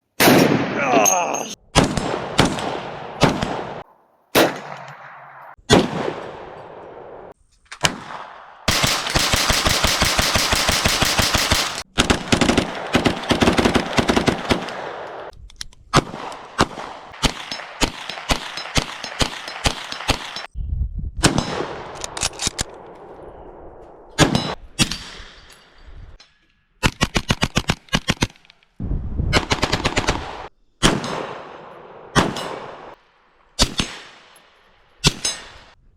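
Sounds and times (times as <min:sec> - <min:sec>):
gunshots with ringing echo: 0:00.2 - 0:01.0, 0:01.7 - 0:15.3, 0:16.0 - 0:20.5, 0:29.4 - 0:35.8.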